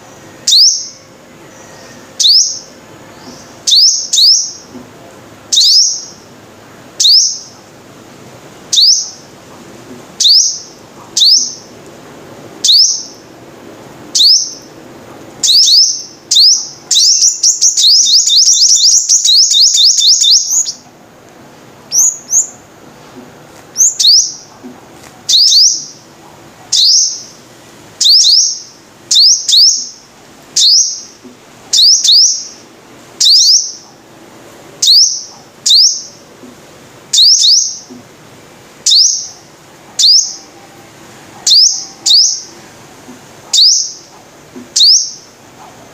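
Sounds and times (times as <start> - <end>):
sunbird high rising call: 0.0 - 4.7, 38.8 - 42.9
sunbird rapid trill: 0.0 - 4.7, 5.5 - 6.3, 7.0 - 7.6, 10.2 - 11.7, 12.6 - 13.3, 14.1 - 14.8, 15.4 - 20.8, 23.8 - 24.5, 25.3 - 26.1, 26.7 - 27.4, 28.0 - 30.0, 30.6 - 32.6, 33.2 - 33.8, 37.1 - 37.9, 38.8 - 40.5, 41.4 - 42.6, 43.5 - 44.1, 44.8 - 45.4.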